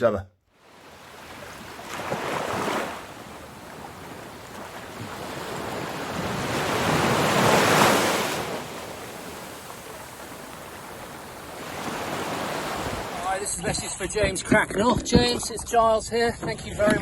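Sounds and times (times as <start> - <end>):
ocean waves washing: 0.5 - 13.7
wind on microphone: 3.2 - 17.0.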